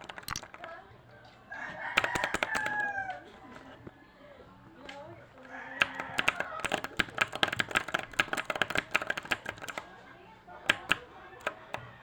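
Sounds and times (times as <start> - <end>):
keyboard keys clicking: 0.0 - 0.8, 2.0 - 3.0, 5.8 - 9.9, 10.7 - 11.9.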